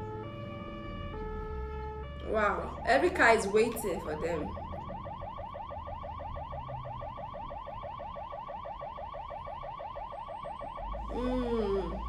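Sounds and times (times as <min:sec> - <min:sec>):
ambulance siren yelping: 0:00.0 - 0:12.0
low traffic rumble: 0:00.0 - 0:12.0.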